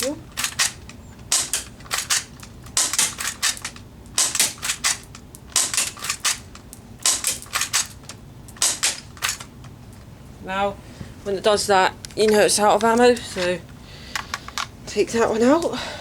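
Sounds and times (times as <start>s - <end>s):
airsoft pistol firing: 0.4s - 8.0s, 8.6s - 9.4s.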